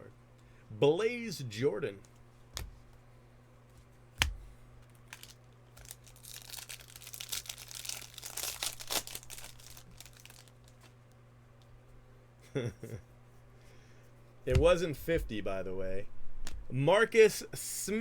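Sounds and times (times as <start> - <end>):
plastic wrapper crinkling and tearing: 4.9 - 11.0.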